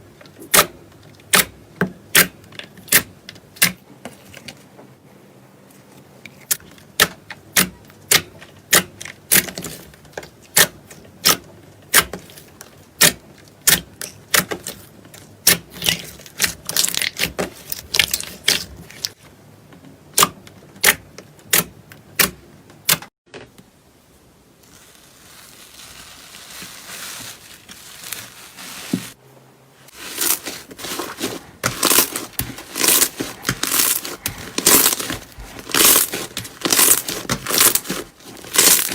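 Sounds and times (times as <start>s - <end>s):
slime crackling and crinkling: 8.1s - 19.2s, 24.5s - 29.2s, 29.9s - 38.9s
slime hissing squish: 24.6s - 29.2s.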